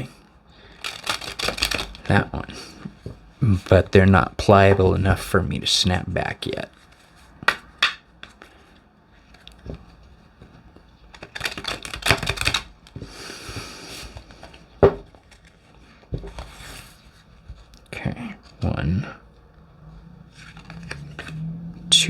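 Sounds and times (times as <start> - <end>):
cards tapping: 0.7 - 2.2, 6.8 - 8.6, 9.3 - 16.7, 20.4 - 21.4
cards being shuffled: 0.7 - 3.2, 6.6 - 17.8, 20.3 - 21.4.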